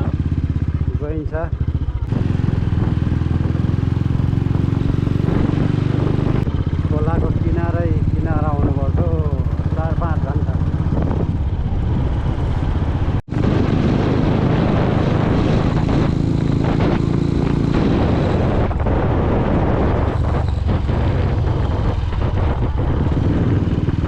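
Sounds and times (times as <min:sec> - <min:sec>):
road noise: 0:00.0 - 0:24.0
vehicle engine rumbling: 0:00.0 - 0:24.0.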